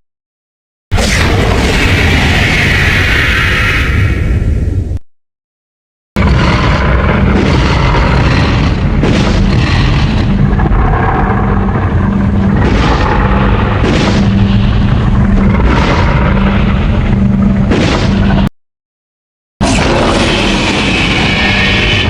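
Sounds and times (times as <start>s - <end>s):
loud rumbling blast of noise: 0.9s - 5.0s, 6.2s - 18.5s, 19.6s - 22.0s
steady low hum: 6.2s - 18.5s
hissing surges: 19.6s - 22.0s.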